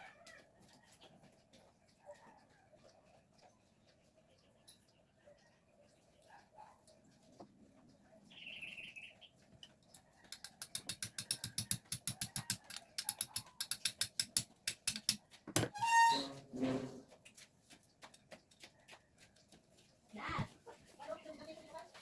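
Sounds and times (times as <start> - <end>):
ratchet wrench clicking: 10.3 - 15.2.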